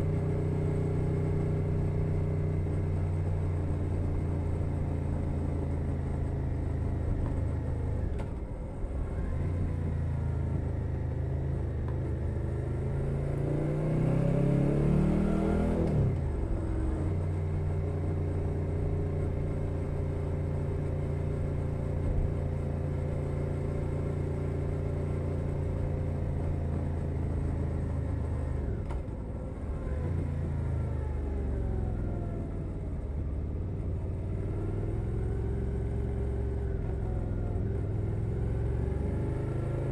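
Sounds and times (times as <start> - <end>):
motorcycle engine revving: 12.2 - 18.6.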